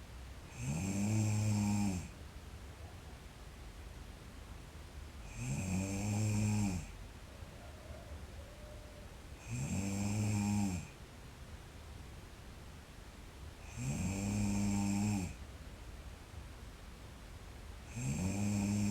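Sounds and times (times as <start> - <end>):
girl snoring: 0.5 - 2.1, 5.3 - 6.9, 9.4 - 10.9, 13.6 - 15.4, 17.9 - 18.9.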